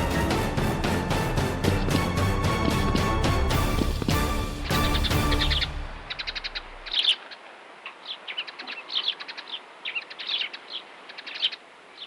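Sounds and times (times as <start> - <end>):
small birds chirping: 4.7 - 12.0.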